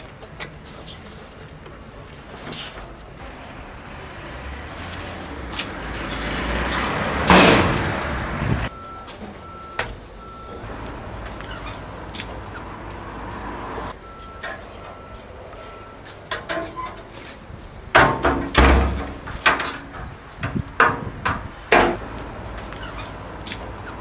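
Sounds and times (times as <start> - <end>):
baler machinery running: 0.0 - 24.0
short electronic beeps: 8.7 - 11.8, 14.0 - 16.1.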